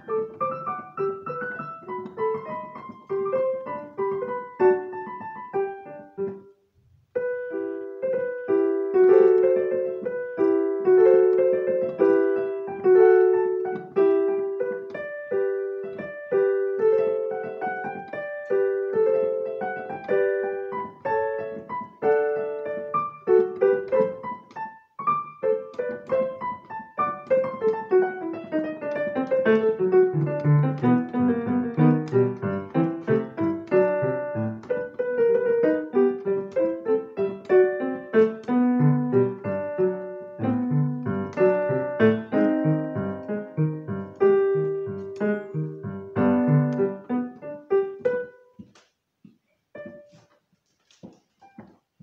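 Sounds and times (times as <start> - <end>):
piano piece: 0.0 - 48.9, 49.7 - 52.0.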